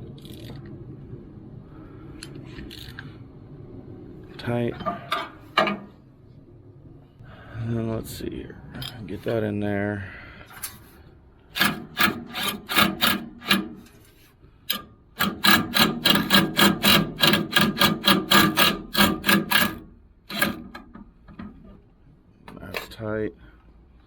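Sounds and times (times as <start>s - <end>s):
ratchet wrench rasping: 11.5s - 14.0s, 14.7s - 20.8s.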